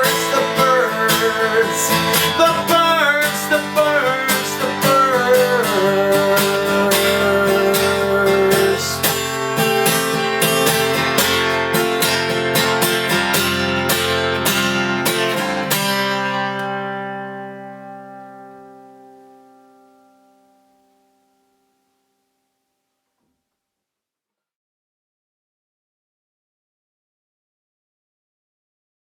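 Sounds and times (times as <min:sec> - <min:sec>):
acoustic guitar strumming: 0:00.0 - 0:22.6.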